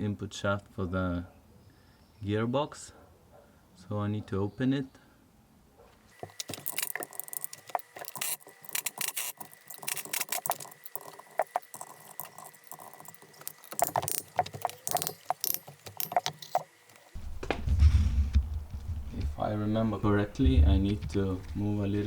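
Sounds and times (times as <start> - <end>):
metal tools clinking and rattling: 6.2 - 17.2.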